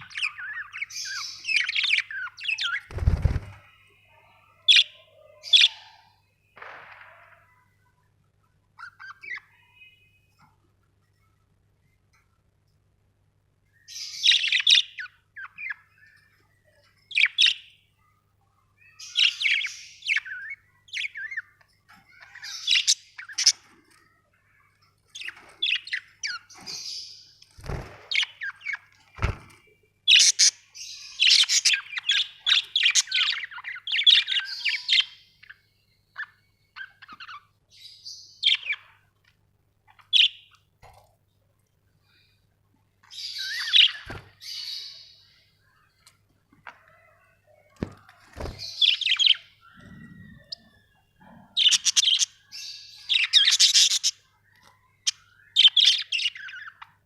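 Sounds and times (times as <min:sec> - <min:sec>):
budgerigars chirping: 0:00.0 - 0:03.4, 0:22.1 - 0:23.7, 0:30.1 - 0:35.6, 0:43.1 - 0:45.2, 0:48.6 - 0:50.7, 0:51.5 - 0:54.3, 0:55.0 - 0:56.9.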